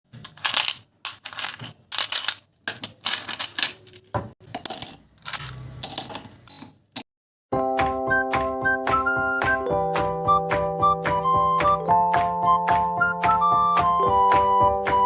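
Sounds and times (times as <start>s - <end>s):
clattering and scraping: 0.1s - 7.0s.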